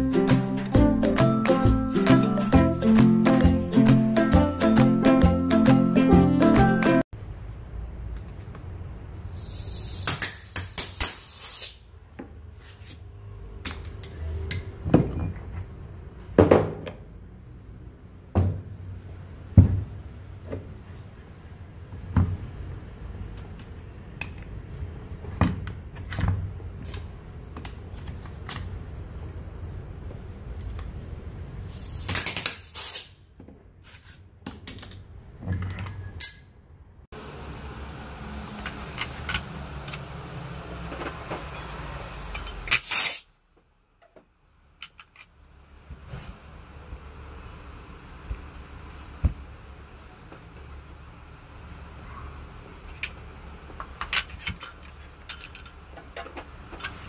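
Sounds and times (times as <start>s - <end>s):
hiss: 9.2s - 11.9s, 31.6s - 33.2s, 42.7s - 43.4s
metal tools clinking on workbench: 35.5s - 36.7s.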